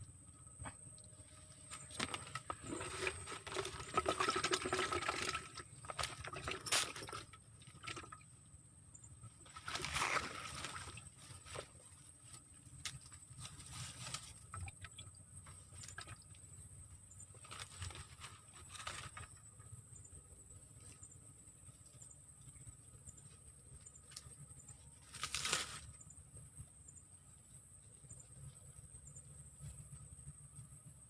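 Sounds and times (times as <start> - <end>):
water splashing and sloshing: 1.9 - 8.4, 9.4 - 16.5.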